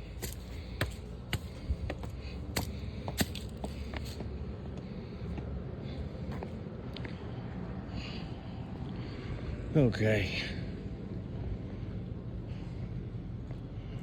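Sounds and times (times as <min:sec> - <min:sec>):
steady low rumble: 0:00.0 - 0:14.0
footsteps of people walking: 0:00.1 - 0:07.3, 0:13.4 - 0:14.0.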